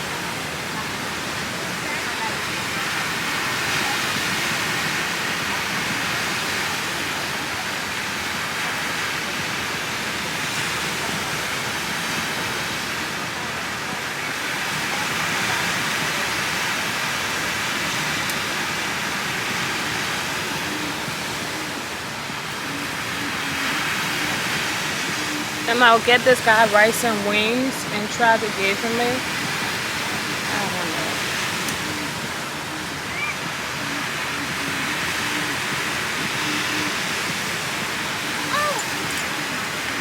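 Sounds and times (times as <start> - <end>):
steady rushing noise: 0.0 - 40.0.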